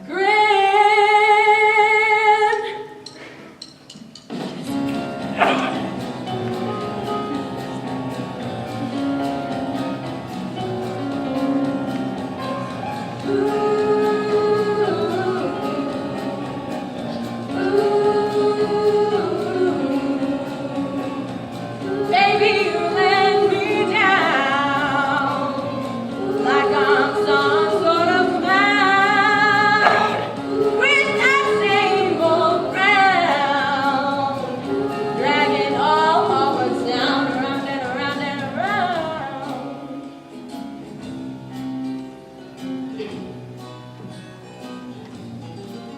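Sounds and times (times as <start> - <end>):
singers performing musical-theatre song: 0.0 - 45.9
high voices singing with vibrato: 5.0 - 6.5, 12.9 - 40.3.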